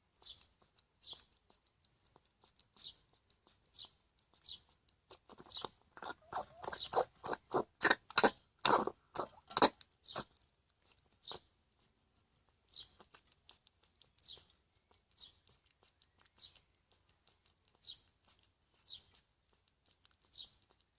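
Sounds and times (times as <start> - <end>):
hedgehog coughing: 6.0 - 10.3.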